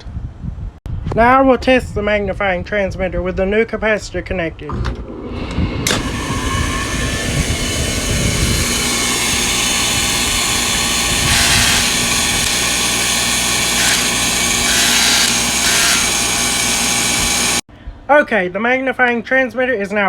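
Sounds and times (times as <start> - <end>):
tesla coil electrical noise: 5.0 - 17.6.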